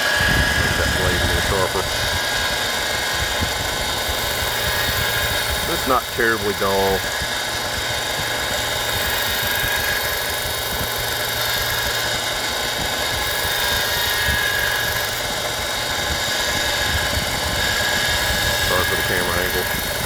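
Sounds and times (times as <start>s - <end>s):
belt sander motor hum: 0.0s - 20.0s.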